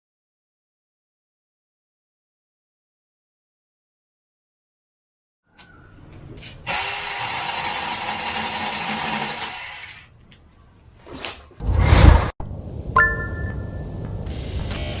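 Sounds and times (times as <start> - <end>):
electric chainsaw running: 6.7 - 10.0.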